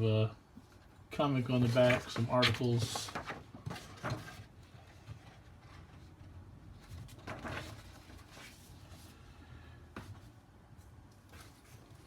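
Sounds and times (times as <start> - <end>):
low room hum: 0.0 - 12.0
paper rustling: 1.5 - 9.2.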